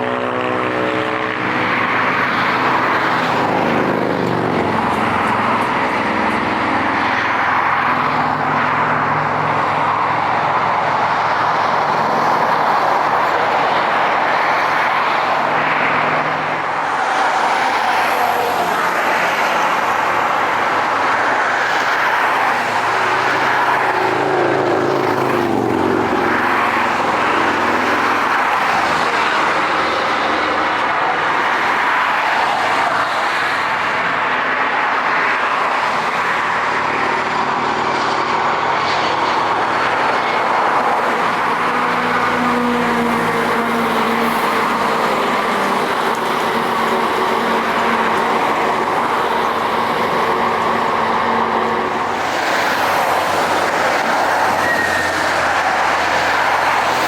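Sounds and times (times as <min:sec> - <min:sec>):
jet engines rushing: 0:00.0 - 0:57.0
high turbine whine: 0:33.6 - 0:57.0.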